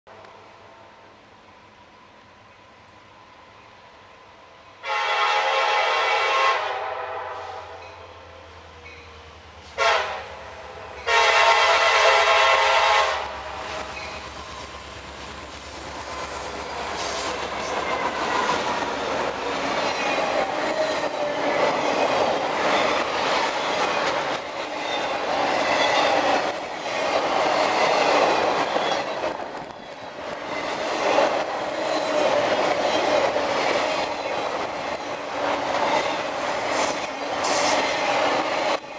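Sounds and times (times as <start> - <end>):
locomotive air horn blasts: 4.8 - 7.9, 9.7 - 14.0
train wheels clattering on rail: 13.5 - 38.9.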